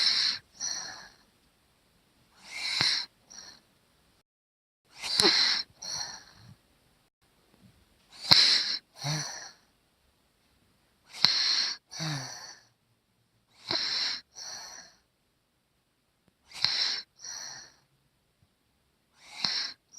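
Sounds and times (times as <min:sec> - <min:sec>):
child snoring: 0:00.0 - 0:01.2, 0:02.4 - 0:03.6, 0:05.0 - 0:06.6, 0:08.2 - 0:09.6, 0:11.1 - 0:12.7, 0:13.6 - 0:15.0, 0:16.5 - 0:17.8, 0:19.2 - 0:19.9.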